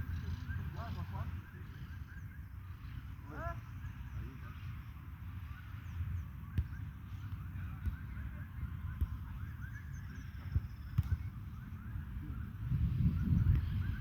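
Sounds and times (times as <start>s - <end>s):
flock of birds chattering: 0.0s - 4.7s.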